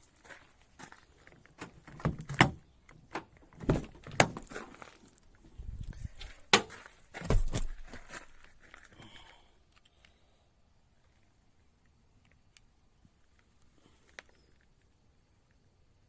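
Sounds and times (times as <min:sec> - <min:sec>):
knocks and clunks: 0:01.6 - 0:04.6, 0:06.2 - 0:08.1.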